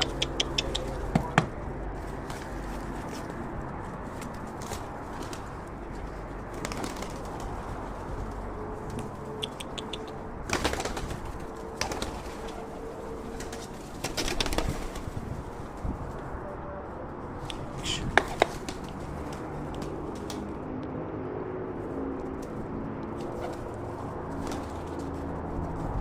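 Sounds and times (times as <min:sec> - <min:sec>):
pigeons cooing: 0:00.0 - 0:01.6, 0:09.3 - 0:10.3
wings flapping: 0:00.0 - 0:03.4, 0:04.0 - 0:16.2, 0:17.5 - 0:20.6, 0:22.4 - 0:26.0.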